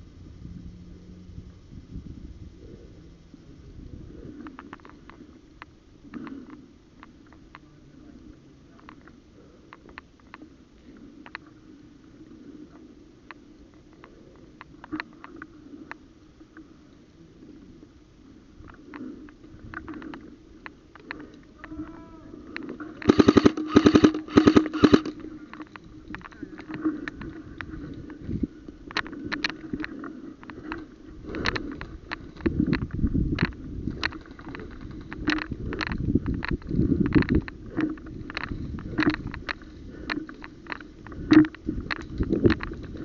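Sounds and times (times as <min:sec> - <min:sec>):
scattered clicks: 0:04.2 - 0:16.7, 0:18.6 - 0:43.0
airsoft gun full-auto bursts: 0:23.0 - 0:25.2.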